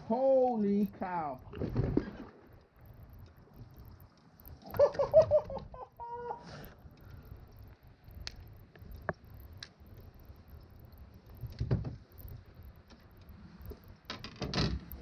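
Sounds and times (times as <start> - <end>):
sharp clicks: 6.5 - 15.0.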